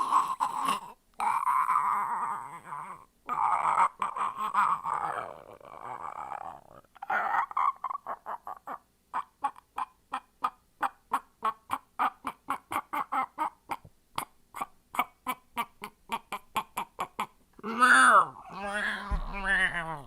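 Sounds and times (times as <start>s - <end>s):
person making clipped vocal noises: 13.7s - 20.0s.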